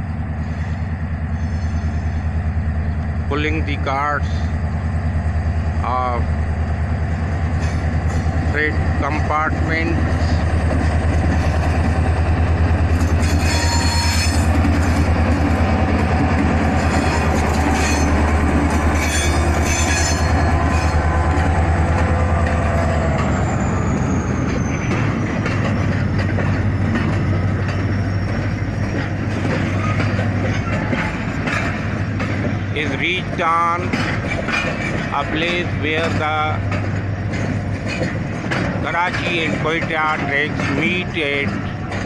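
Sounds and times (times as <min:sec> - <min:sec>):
diesel locomotive engine droning: 0:00.0 - 0:42.0
train wagons rumbling on rails: 0:00.0 - 0:42.0
steel wheels squealing: 0:00.4 - 0:02.3, 0:12.8 - 0:38.2.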